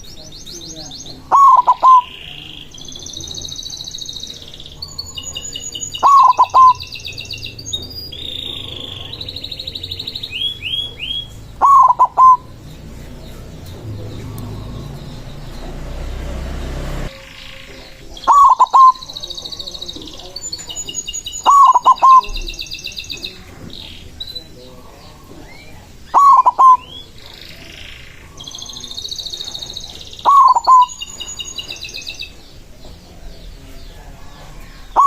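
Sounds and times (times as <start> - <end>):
small birds chirping: 0.0 - 35.0
dove cooing: 1.2 - 3.3, 4.8 - 7.0, 8.2 - 16.3, 17.1 - 20.8, 21.4 - 22.5, 24.6 - 31.8, 34.4 - 35.0.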